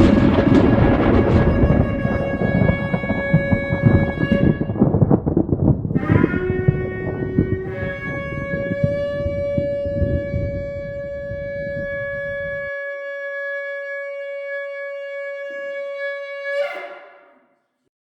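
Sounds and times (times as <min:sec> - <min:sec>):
low rumble: 0:00.0 - 0:12.7
shofar blast: 0:00.0 - 0:17.6.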